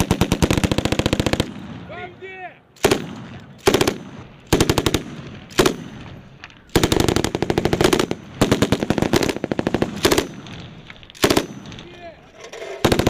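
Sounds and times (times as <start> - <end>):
machine gun firing in bursts: 0.0 - 1.7, 2.8 - 6.1, 6.7 - 11.8, 12.8 - 13.0.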